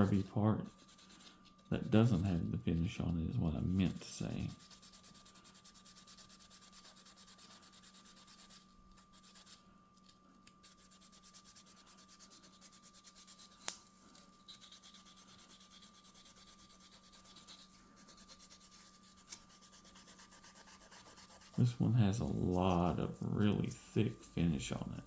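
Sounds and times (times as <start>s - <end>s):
scouring pad rubbing wood: 0.0s - 8.6s, 14.5s - 25.0s.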